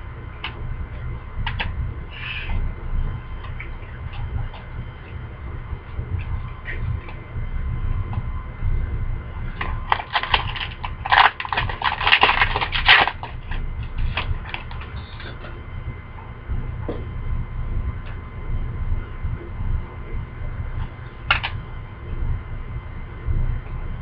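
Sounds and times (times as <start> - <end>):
steady low hum: 0.0 - 24.0
cards and plastic packaging crinkling: 9.9 - 15.5.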